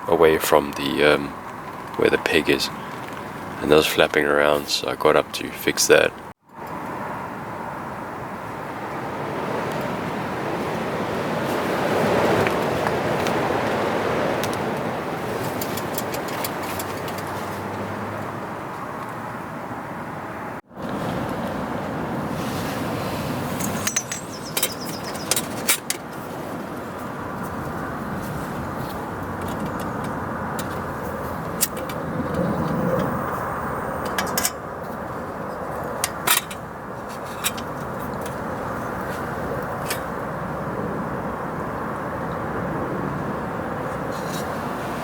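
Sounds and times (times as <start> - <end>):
storm wind rushing: 7.1 - 18.7, 19.7 - 35.9
sharp clicks and light knocks: 35.7 - 38.4.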